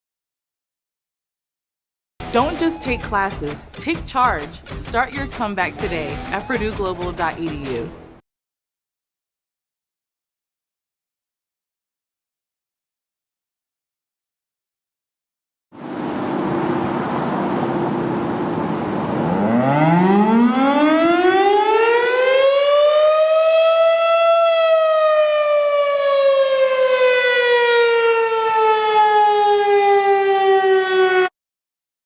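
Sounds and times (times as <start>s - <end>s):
tornado warning siren: 15.8s - 31.4s.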